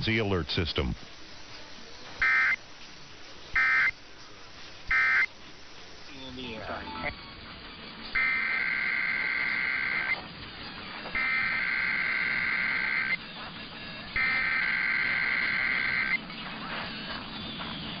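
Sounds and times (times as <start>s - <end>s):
warbling digital tone bursts: 14.2s - 16.2s.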